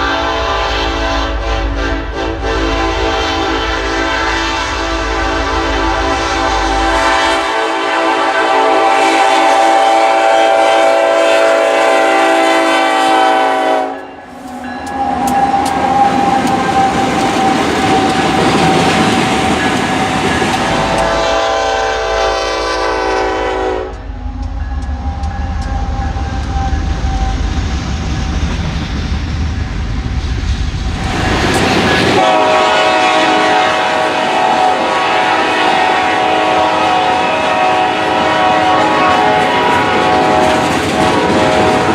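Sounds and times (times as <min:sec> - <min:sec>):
locomotive air horn blasts: 0:00.0 - 0:15.4, 0:20.6 - 0:24.1, 0:32.1 - 0:41.9
train low rumble: 0:00.0 - 0:41.9.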